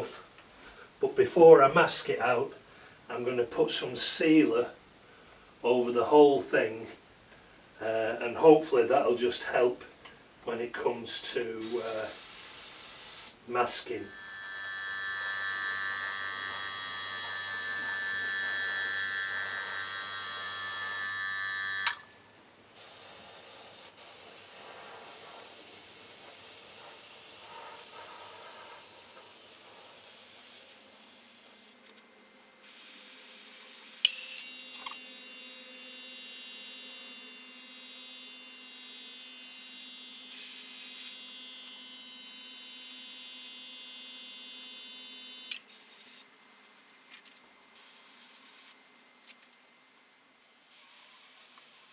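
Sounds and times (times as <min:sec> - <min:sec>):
spray hiss: 0:11.6 - 0:13.4, 0:22.8 - 0:31.8, 0:32.6 - 0:34.1, 0:47.8 - 0:48.7, 0:50.1 - 0:51.9
compressor whine: 0:13.9 - 0:22.5, 0:32.6 - 0:45.7.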